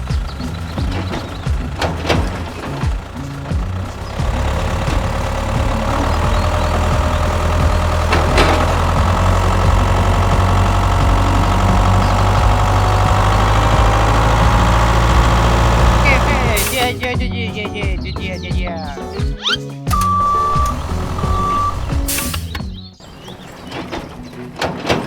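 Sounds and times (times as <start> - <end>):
engine idling: 0.0 - 17.1, 19.9 - 22.7
sharp click: 19.9 - 22.6.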